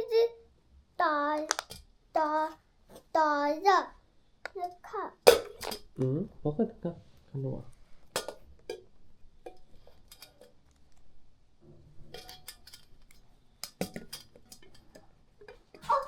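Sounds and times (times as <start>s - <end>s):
small hard objects clicking: 1.4s - 1.9s.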